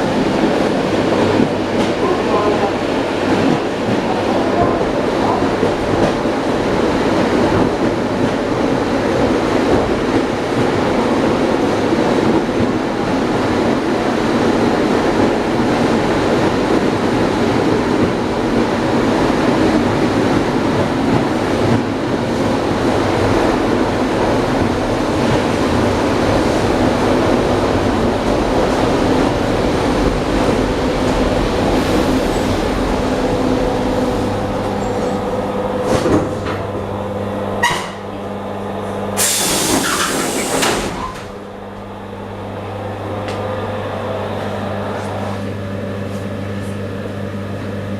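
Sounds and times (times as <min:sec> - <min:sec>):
steady hum: 0:25.8 - 0:39.2.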